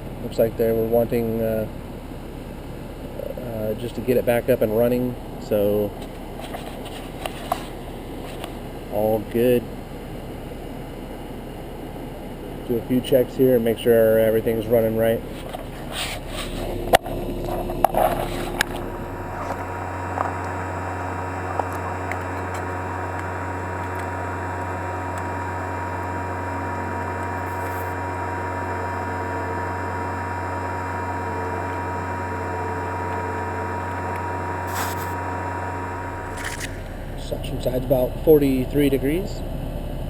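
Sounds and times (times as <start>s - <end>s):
air conditioner humming: 0.0s - 40.0s.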